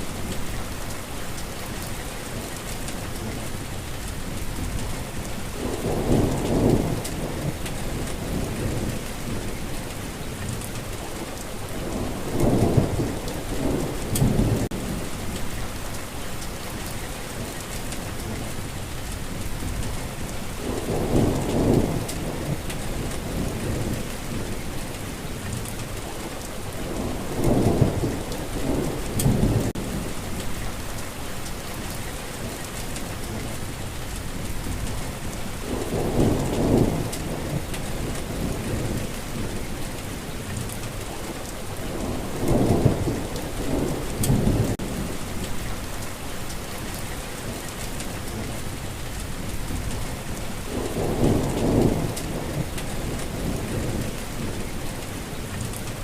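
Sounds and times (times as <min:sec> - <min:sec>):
rain falling: 0:00.0 - 0:56.0
rolling thunder: 0:04.4 - 0:11.0, 0:11.7 - 0:15.7, 0:19.4 - 0:26.0, 0:26.7 - 0:31.0, 0:32.7 - 0:46.0, 0:47.6 - 0:56.0.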